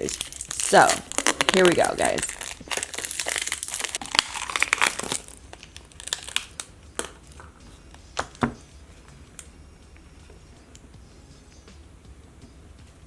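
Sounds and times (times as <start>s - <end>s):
packing tape crackling: 0.0s - 7.6s.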